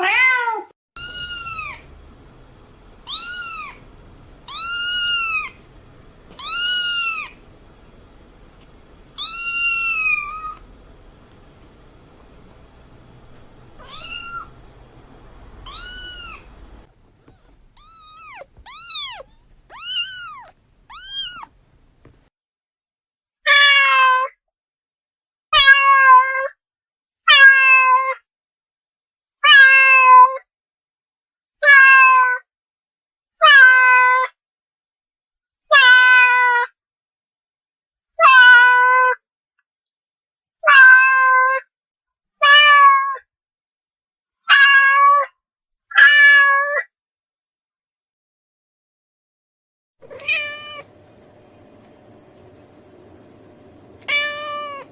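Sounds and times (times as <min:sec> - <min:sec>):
cat meowing: 0:00.0 - 0:01.9, 0:03.0 - 0:03.8, 0:04.4 - 0:05.6, 0:06.3 - 0:07.4, 0:09.2 - 0:10.6, 0:13.8 - 0:14.6, 0:15.5 - 0:21.6, 0:31.6 - 0:32.4, 0:40.7 - 0:41.6, 0:44.5 - 0:45.3, 0:50.0 - 0:50.9, 0:54.0 - 0:54.9.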